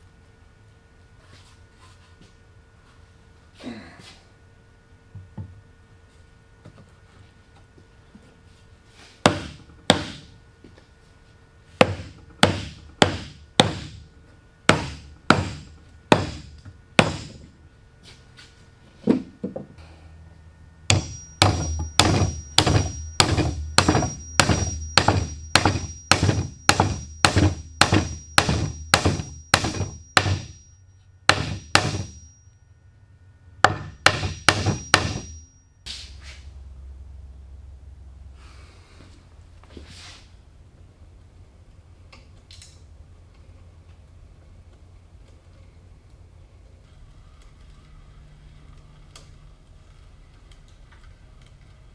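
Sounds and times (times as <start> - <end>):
hammer blows on wood: 20.9 - 30.6, 31.3 - 32.4, 33.6 - 35.5.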